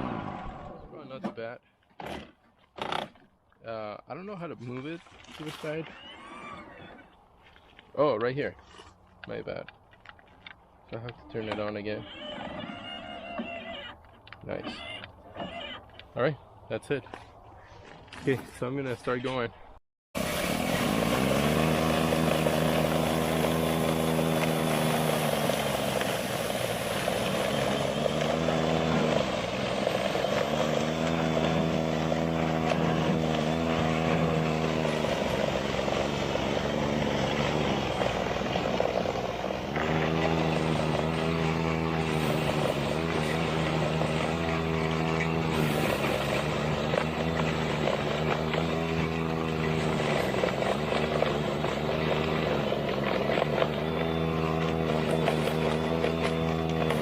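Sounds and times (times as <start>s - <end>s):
snow blower whirring hum: 20.2s - 57.0s.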